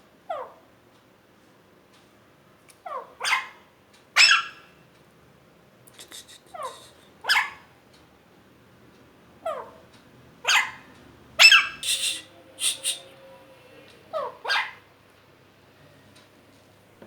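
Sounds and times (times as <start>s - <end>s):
parrot squawking: 10.4s - 10.8s, 11.4s - 13.3s, 14.1s - 14.8s.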